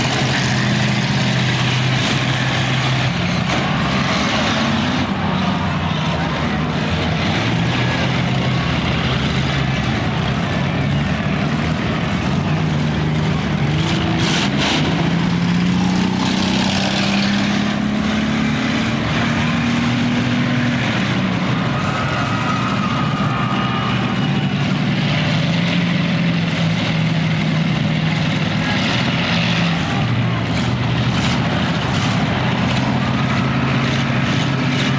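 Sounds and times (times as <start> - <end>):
car engines running hard: 0.0 - 34.9.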